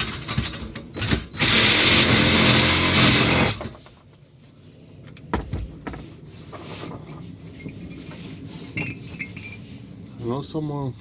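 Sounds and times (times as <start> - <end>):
power tool cutting metal: 1.4 - 3.6.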